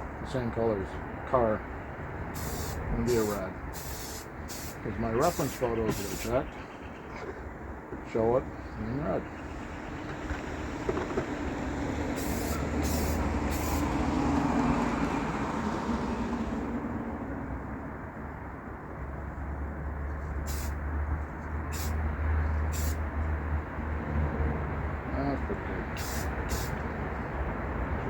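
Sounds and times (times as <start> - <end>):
low outdoor rumble: 0.0 - 15.4, 16.3 - 28.0
spray paint hissing: 2.4 - 6.4, 12.1 - 14.0, 20.4 - 20.8, 21.6 - 22.0, 22.6 - 23.1, 25.9 - 26.8.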